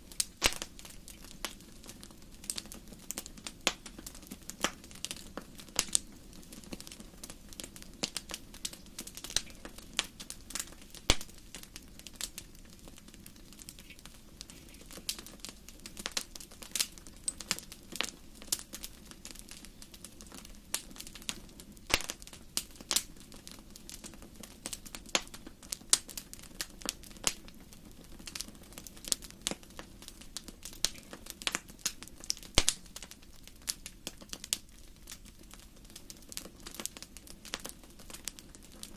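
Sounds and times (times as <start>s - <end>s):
campfire crackling: 0.0s - 38.9s.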